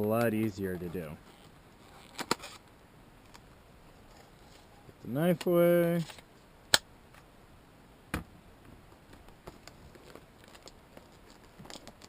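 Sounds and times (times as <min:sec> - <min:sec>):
plastic package clicks and rustles: 0:09.2 - 0:12.0.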